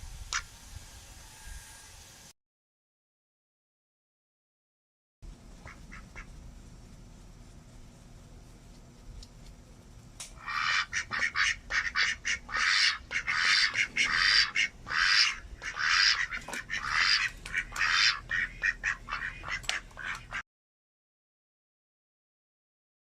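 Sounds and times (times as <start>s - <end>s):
duck quacking: 5.6s - 6.3s, 10.4s - 20.4s.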